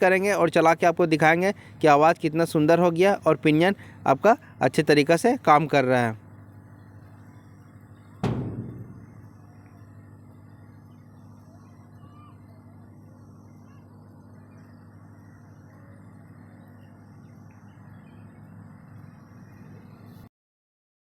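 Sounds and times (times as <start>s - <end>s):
steady low hum: 0.0s - 20.1s
faint bird chirps: 10.4s - 20.2s.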